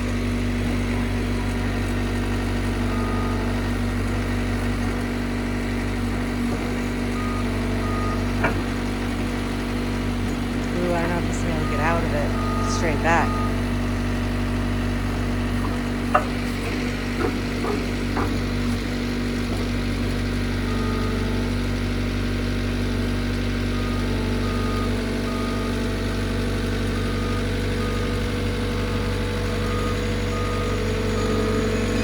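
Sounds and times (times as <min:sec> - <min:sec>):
diesel engine running: 0:00.0 - 0:32.0
back-up alarm beeping: 0:10.7 - 0:14.0, 0:26.9 - 0:32.0.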